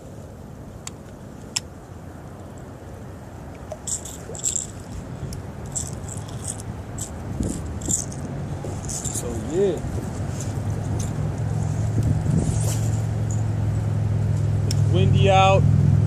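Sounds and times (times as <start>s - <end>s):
wind rumble on microphone: 0.0s - 16.0s
fishing reel clicking: 3.9s - 5.0s, 5.7s - 8.2s.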